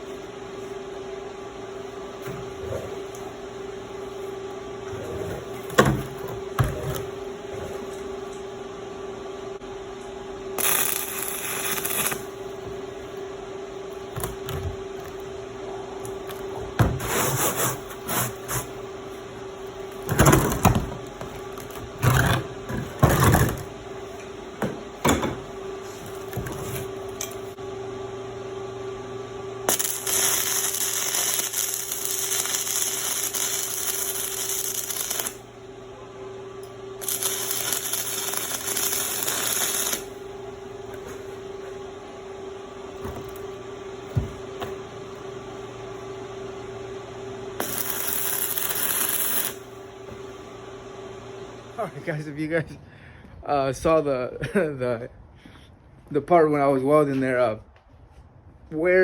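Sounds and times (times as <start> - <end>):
steady hum: 0.0 - 59.0
welding arc crackling: 10.6 - 12.6, 29.6 - 35.5, 36.6 - 40.7, 47.6 - 49.8.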